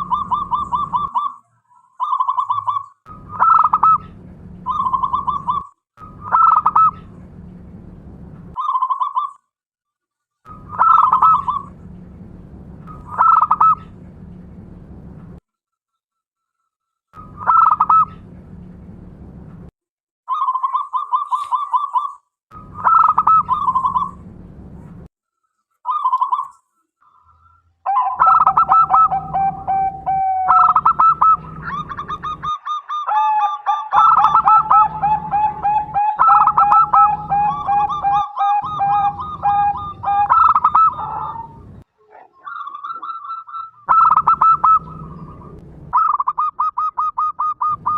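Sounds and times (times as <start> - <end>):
doves cooing in staccato trills: 0.0 - 7.4, 10.5 - 11.8, 12.9 - 14.0, 17.2 - 18.4, 20.3 - 24.3, 27.9 - 47.9.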